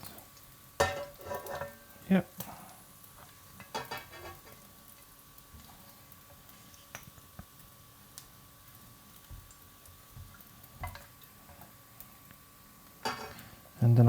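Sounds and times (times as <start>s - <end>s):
oil sizzling in a frying pan: 0.0s - 14.0s.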